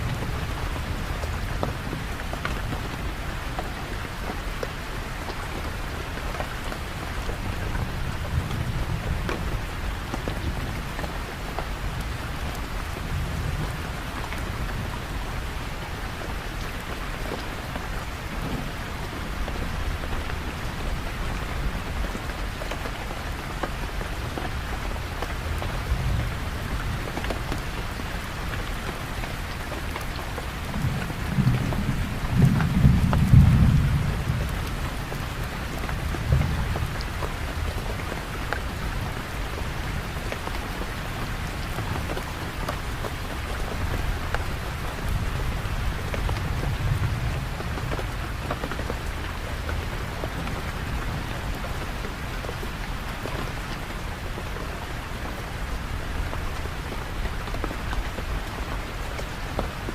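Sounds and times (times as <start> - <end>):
heavy rain falling: 0.0 - 59.9
thunder rumbling: 30.6 - 37.7.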